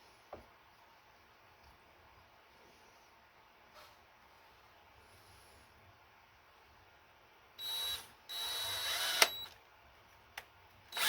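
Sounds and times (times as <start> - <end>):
electric drill drilling metal: 7.6 - 9.5
drill trigger click: 7.7 - 9.6.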